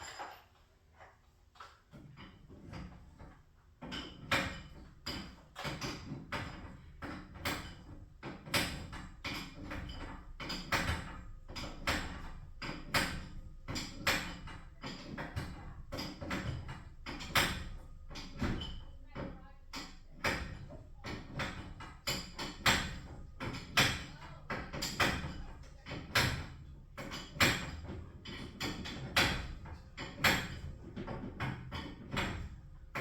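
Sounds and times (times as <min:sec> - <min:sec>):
metallic clacks and knocks: 0:00.0 - 0:33.0.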